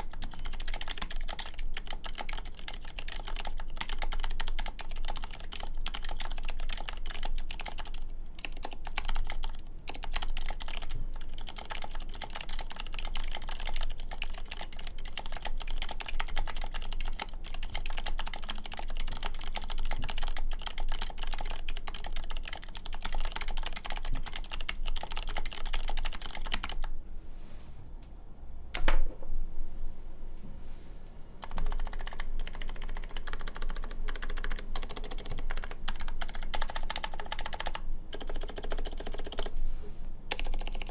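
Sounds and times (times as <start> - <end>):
typing on mechanical keyboard: 0.0 - 26.9, 31.4 - 39.5, 40.3 - 40.9.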